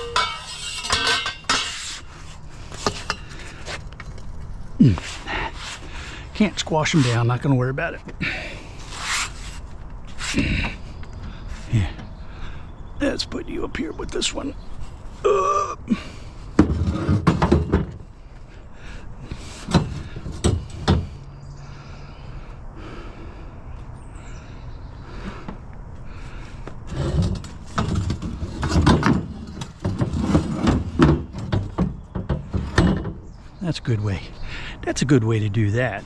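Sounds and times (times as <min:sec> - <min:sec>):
metal frame pieces clanking: 0:00.0 - 0:02.2.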